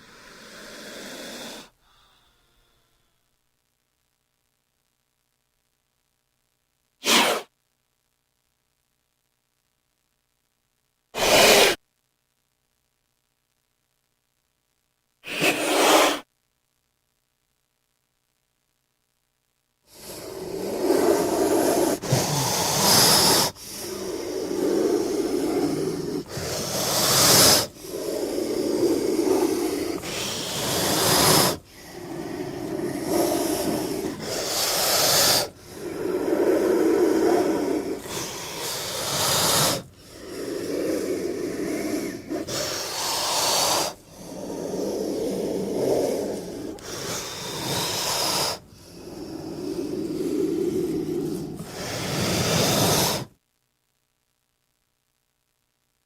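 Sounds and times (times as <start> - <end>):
snake hissing: 0.0 - 1.8, 7.0 - 7.5, 11.2 - 11.8, 15.2 - 16.2, 19.9 - 53.3.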